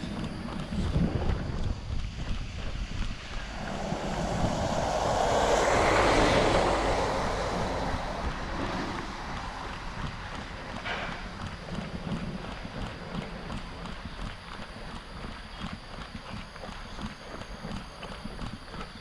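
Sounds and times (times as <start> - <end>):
wind buffeting microphone: 0.0 - 18.8
motor vehicle passing by: 2.4 - 11.4.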